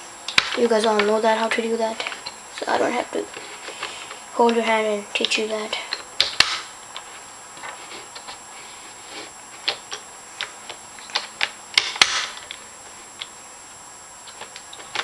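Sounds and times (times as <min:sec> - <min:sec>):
plastic puzzle pieces snapping: 0:05.2 - 0:08.4, 0:09.6 - 0:12.6.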